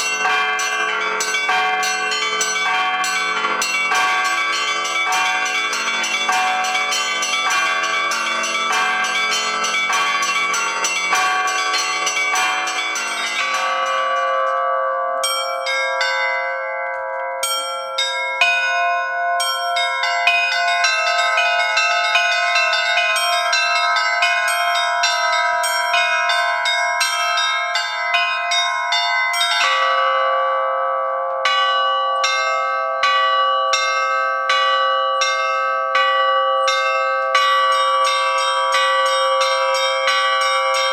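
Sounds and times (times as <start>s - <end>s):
deep bass church bell: 0.0s - 40.9s
middle bells ringing: 0.0s - 40.9s
small bells striking rhythm: 0.0s - 40.9s.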